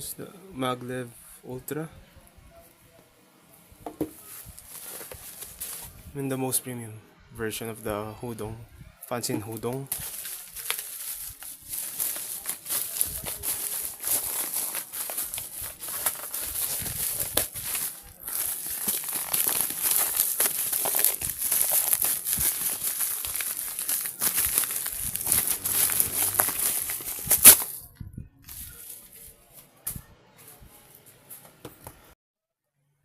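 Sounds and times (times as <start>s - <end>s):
packaging crinkling and rustling: 4.0s - 6.0s, 9.4s - 27.9s, 28.5s - 29.4s.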